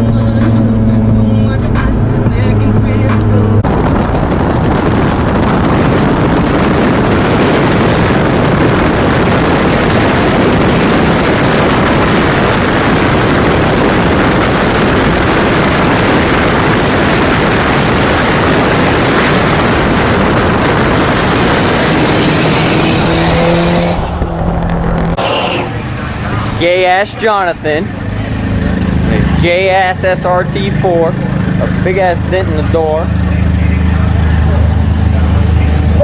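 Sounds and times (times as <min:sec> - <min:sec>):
car rushing noise while driving: 0:00.0 - 0:36.0.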